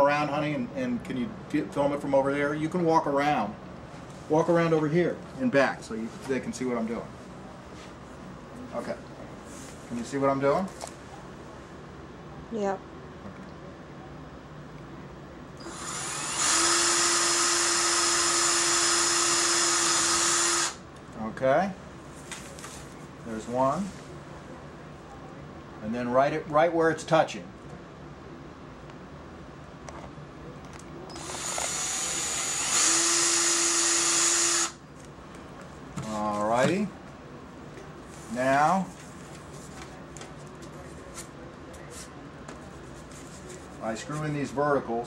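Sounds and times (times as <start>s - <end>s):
electric drill whining: 15.6s - 20.8s, 31.1s - 34.8s.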